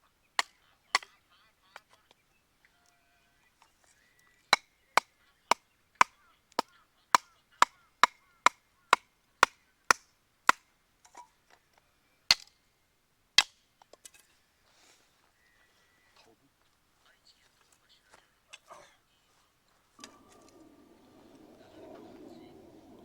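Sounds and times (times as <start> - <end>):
hatchet splitting firewood: 12.3 - 12.6, 13.4 - 14.2.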